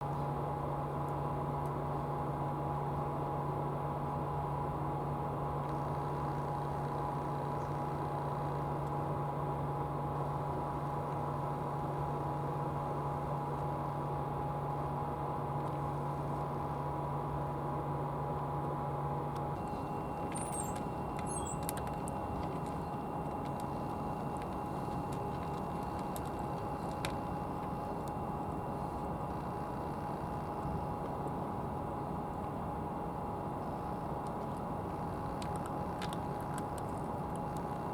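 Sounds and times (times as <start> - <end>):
boat engine droning: 19.5 - 37.9.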